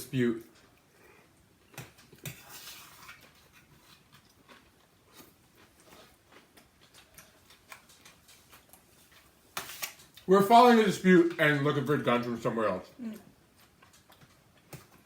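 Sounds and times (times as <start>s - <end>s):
chewing food: 0.4s - 10.3s, 13.0s - 15.0s.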